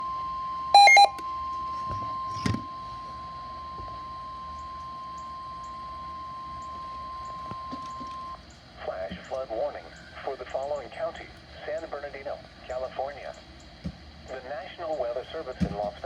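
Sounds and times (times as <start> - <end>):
steady high warning tone: 0.0 - 8.4
loud buzzy beep: 0.8 - 1.2.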